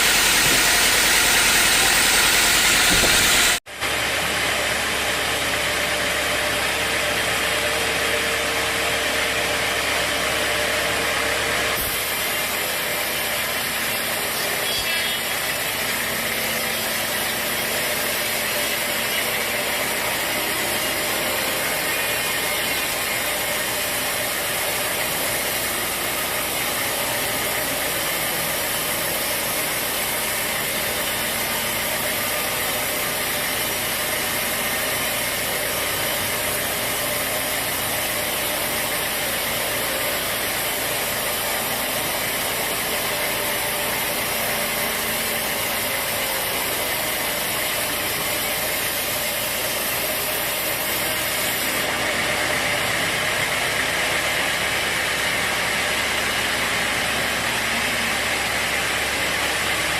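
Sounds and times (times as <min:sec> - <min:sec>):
sawmill saw cutting logs: 0:00.0 - 0:59.9.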